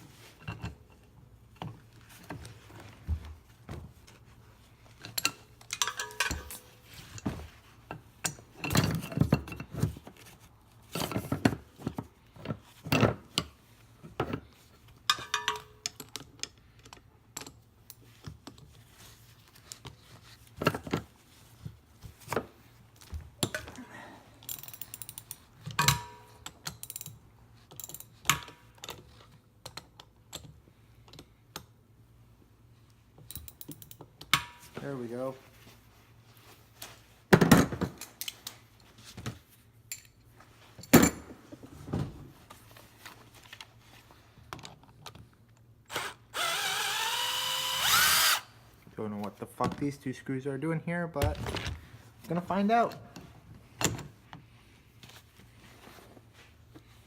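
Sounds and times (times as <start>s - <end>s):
hand tools clanking on metal: 5.2s - 6.7s.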